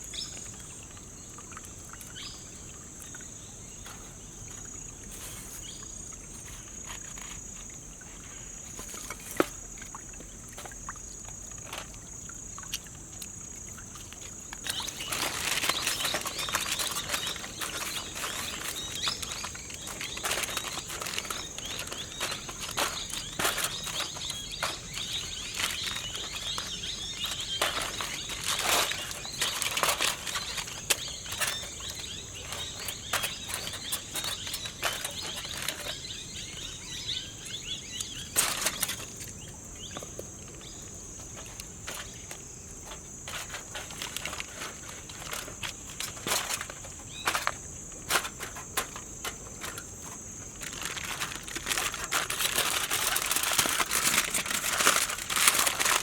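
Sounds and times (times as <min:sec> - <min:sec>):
insects droning: 0:00.0 - 0:56.0
handling clicks and crackles: 0:14.1 - 0:36.1, 0:38.0 - 0:39.3, 0:39.9 - 0:56.0
loud crinkling: 0:14.6 - 0:36.3, 0:38.3 - 0:39.2, 0:41.4 - 0:56.0.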